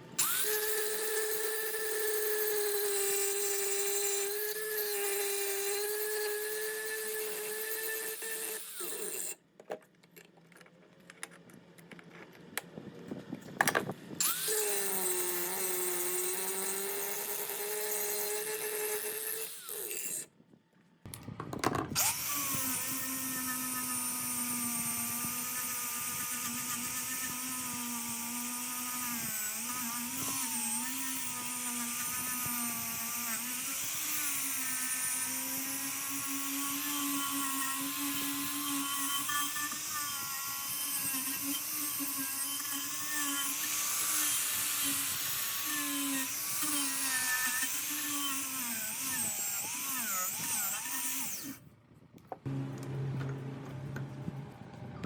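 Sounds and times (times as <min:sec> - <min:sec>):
electric power tool whining: 0:00.0 - 0:09.4, 0:13.6 - 0:20.3, 0:21.1 - 0:51.6.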